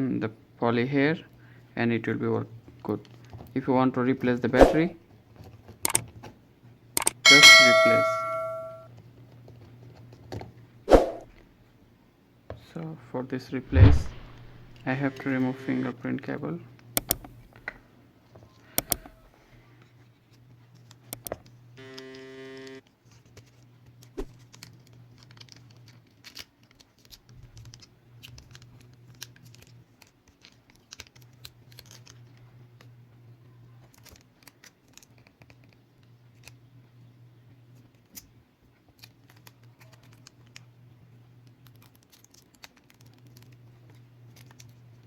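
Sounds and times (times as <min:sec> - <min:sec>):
low steady hum: 0:07.0 - 0:08.8
steady pitched tone: 0:07.3 - 0:08.8.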